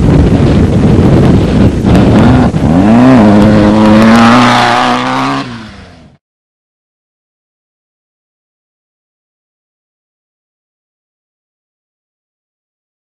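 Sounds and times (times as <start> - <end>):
rumble of wind and dirt: 0.0 - 6.2
engine accelerating hard: 1.3 - 6.2.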